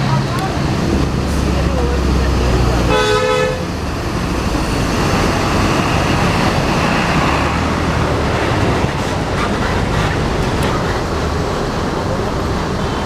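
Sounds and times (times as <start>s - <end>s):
bus engines: 0.0s - 13.0s
road noise: 0.0s - 13.0s
bus horn chord: 2.9s - 3.7s.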